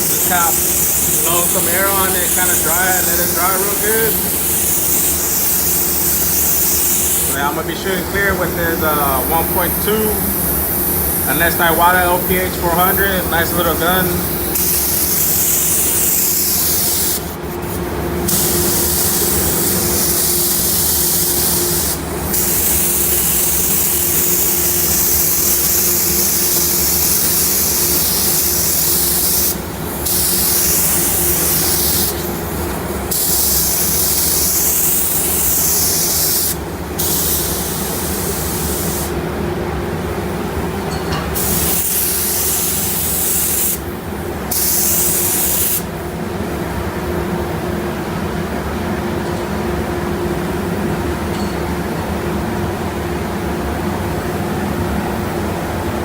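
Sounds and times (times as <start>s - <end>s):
spray gun air hissing: 0.0s - 39.2s, 41.4s - 45.9s
paint booth hum: 0.0s - 56.0s.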